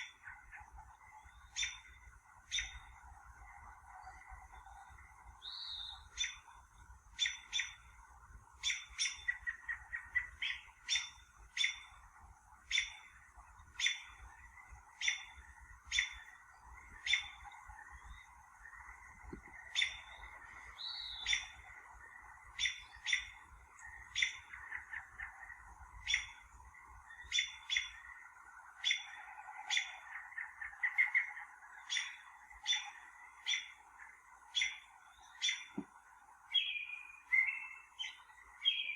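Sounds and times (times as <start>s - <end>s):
birds chirping: 0.0s - 38.9s
bird whistle: 5.4s - 6.4s, 27.2s - 28.0s, 36.5s - 38.9s.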